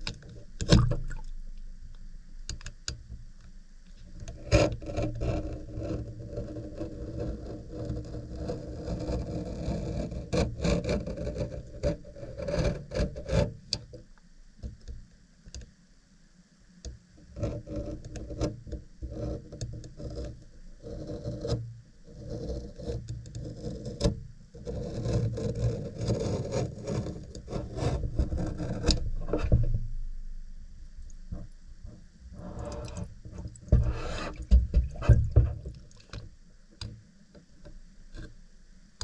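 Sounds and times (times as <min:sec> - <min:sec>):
objects rubbing and scraping: 0:32.3 - 0:36.1.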